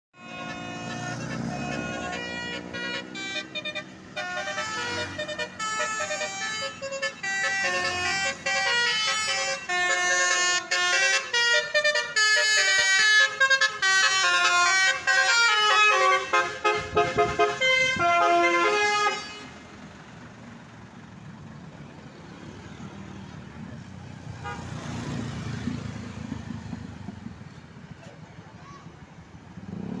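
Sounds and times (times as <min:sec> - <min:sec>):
engine and road rumble: 0:00.1 - 0:30.0
bus horn playing a rapid tune: 0:00.2 - 0:19.9, 0:24.4 - 0:24.7.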